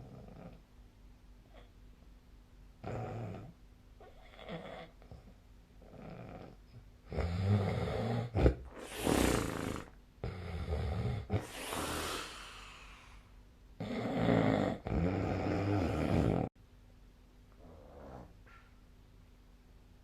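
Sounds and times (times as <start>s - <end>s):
person snoring: 5.8s - 16.5s
airy breaths: 8.7s - 9.9s, 11.3s - 13.4s.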